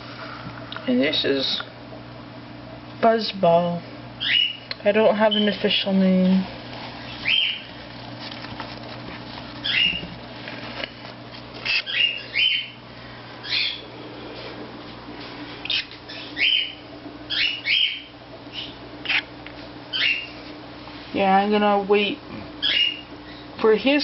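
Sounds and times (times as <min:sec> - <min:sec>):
faint steady hum: 0:00.0 - 0:24.0
cockatiel chick calling: 0:04.2 - 0:04.6, 0:07.2 - 0:07.7, 0:09.6 - 0:10.1, 0:11.6 - 0:12.8, 0:13.4 - 0:13.8, 0:15.6 - 0:19.3, 0:19.9 - 0:20.4, 0:22.6 - 0:23.4.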